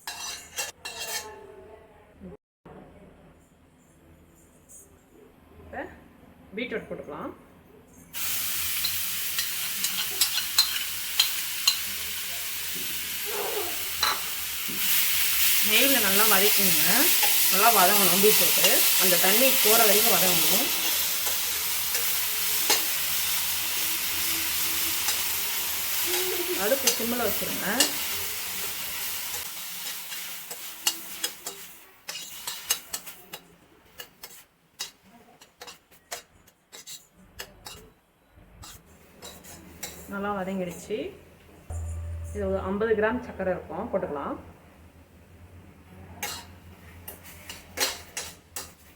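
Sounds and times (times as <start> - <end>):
spoon scraping and tapping a pan: 0.0 - 1.3, 8.8 - 11.9, 14.0 - 14.9, 27.8 - 38.0
beetroot sizzling in a pan: 8.2 - 33.4.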